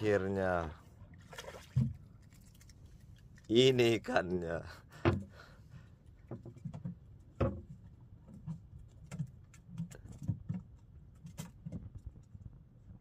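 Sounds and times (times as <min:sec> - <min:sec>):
knocks and thumps on boat: 0:04.9 - 0:05.4, 0:06.2 - 0:12.2.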